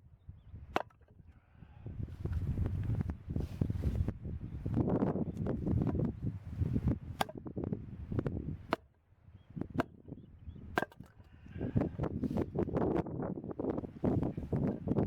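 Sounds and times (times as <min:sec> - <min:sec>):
wind noise on microphone: 0:00.0 - 0:15.0
sharp knocks or cracks: 0:10.8 - 0:11.1.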